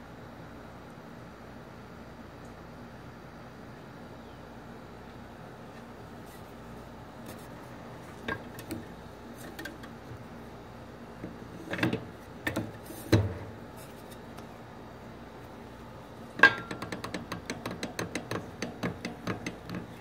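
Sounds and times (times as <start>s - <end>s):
faint steady hum: 0.0s - 20.0s
parts knocking and clunking: 11.2s - 13.6s, 16.4s - 20.0s.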